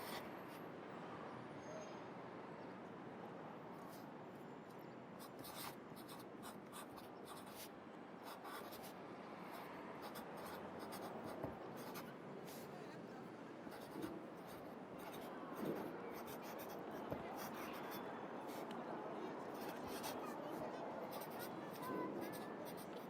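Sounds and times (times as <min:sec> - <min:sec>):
city traffic hum: 0:00.0 - 0:23.0
pencil scratching on paper: 0:05.2 - 0:07.7, 0:08.3 - 0:08.9, 0:09.5 - 0:12.6, 0:13.7 - 0:18.7, 0:19.5 - 0:23.0.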